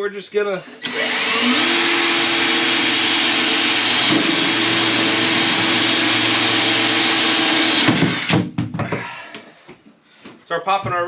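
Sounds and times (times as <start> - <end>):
power tool motor running: 0.8 - 8.3.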